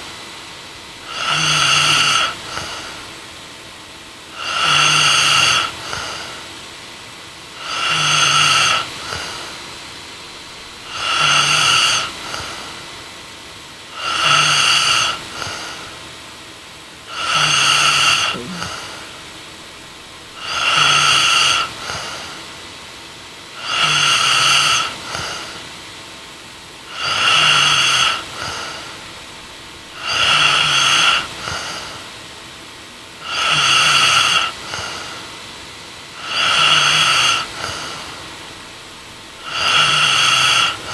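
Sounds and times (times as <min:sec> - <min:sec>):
woman snoring: 0:01.1 - 0:02.8, 0:10.7 - 0:12.4, 0:14.0 - 0:15.2, 0:17.1 - 0:19.0, 0:19.8 - 0:21.8, 0:26.9 - 0:28.8, 0:29.8 - 0:31.8, 0:33.2 - 0:34.9, 0:36.2 - 0:40.9.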